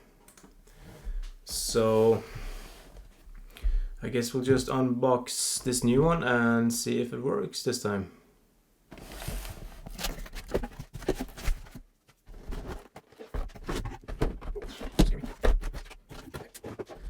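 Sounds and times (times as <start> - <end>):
box knocks and rustles: 9.2 - 17.0.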